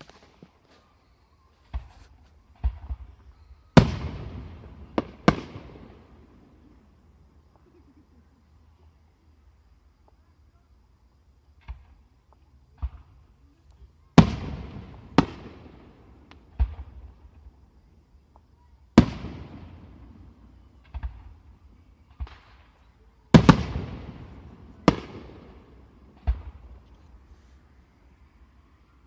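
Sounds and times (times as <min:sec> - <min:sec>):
fireworks crackling: 0:00.0 - 0:07.7, 0:11.5 - 0:28.6
fireworks bangs: 0:01.6 - 0:06.9, 0:14.1 - 0:27.7.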